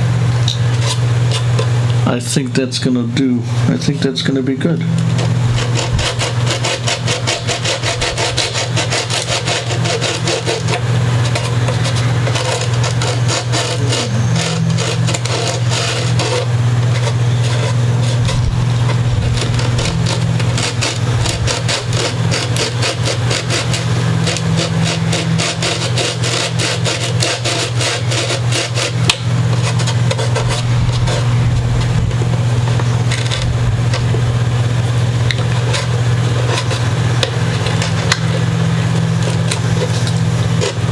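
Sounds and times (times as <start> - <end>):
steady low hum: 0.0 - 40.9
file rasping on wood: 0.7 - 1.8, 5.0 - 34.2, 34.8 - 40.9.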